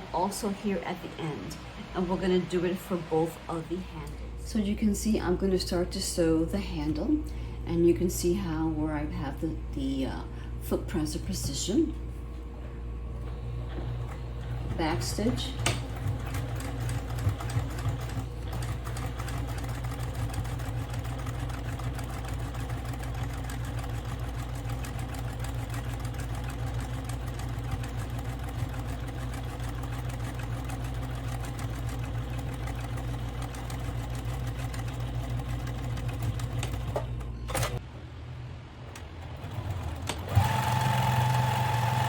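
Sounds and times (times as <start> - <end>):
electric sewing machine stitching: 13.7 - 37.8, 39.3 - 42.0.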